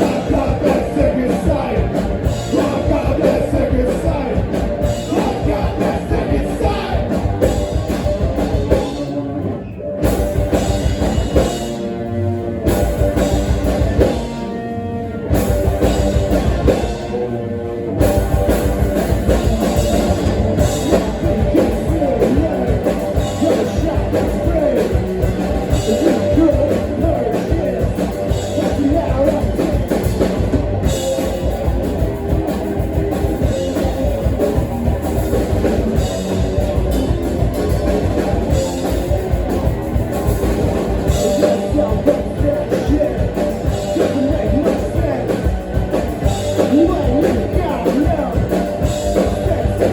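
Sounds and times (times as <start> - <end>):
person singing: 0.0 - 7.4, 19.3 - 30.3, 41.1 - 49.9
drum kit: 0.0 - 9.2, 10.0 - 49.9
electric guitar: 0.0 - 49.9.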